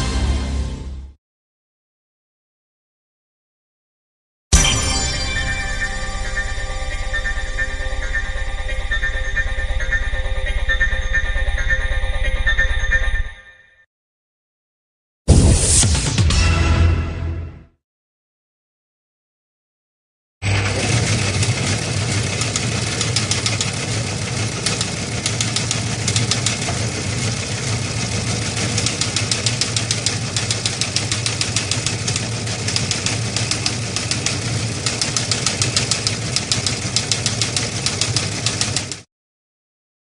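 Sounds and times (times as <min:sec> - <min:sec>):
machine humming and ticking: 0:20.5 - 0:39.0.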